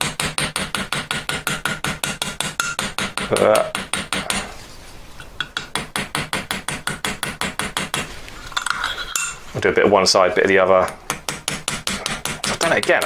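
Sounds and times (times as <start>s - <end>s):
small hammer tapping metal pin: 0.0s - 4.5s.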